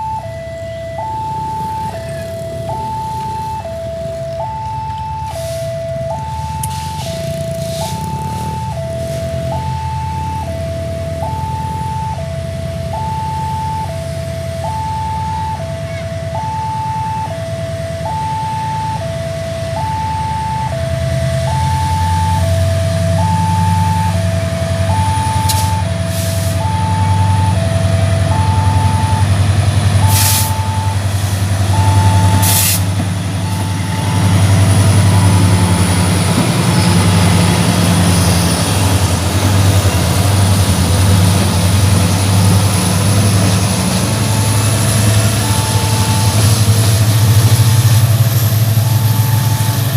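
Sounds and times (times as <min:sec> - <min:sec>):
diesel locomotive engine rumbling: 0:00.0 - 0:49.9
level crossing alarm two-note tone: 0:00.0 - 0:49.9.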